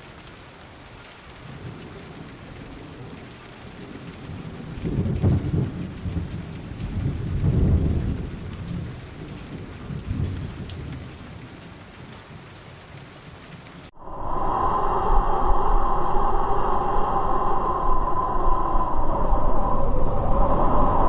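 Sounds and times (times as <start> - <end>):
heavy rain falling: 0.0 - 13.9
thunder rolling: 1.5 - 11.6.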